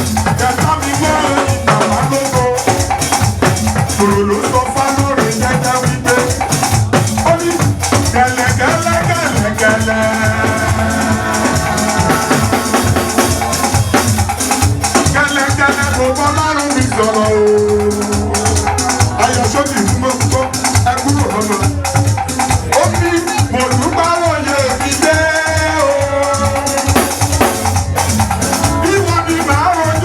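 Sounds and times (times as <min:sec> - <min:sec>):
drums: 0:00.0 - 0:30.0
melody: 0:09.4 - 0:14.8, 0:27.9 - 0:30.0.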